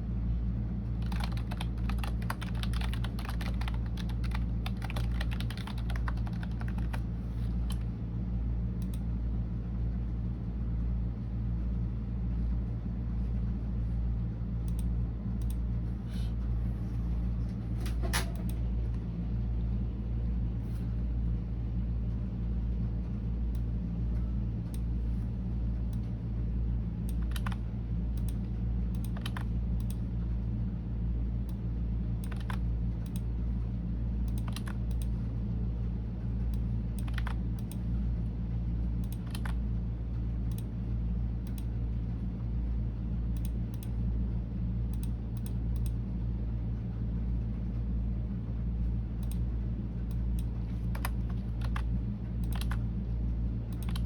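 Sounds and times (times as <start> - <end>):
low hum: 0.0 - 54.0
computer keyboard typing: 1.0 - 7.8, 27.1 - 27.6, 29.0 - 30.0, 32.2 - 33.2, 34.3 - 35.1, 37.0 - 37.8, 39.0 - 39.6, 50.8 - 52.8, 53.8 - 54.0.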